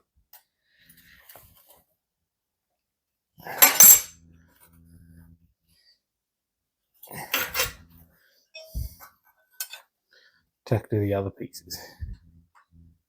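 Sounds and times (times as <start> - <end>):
steel pieces clinking on metal table: 3.6 - 4.1, 7.3 - 7.8.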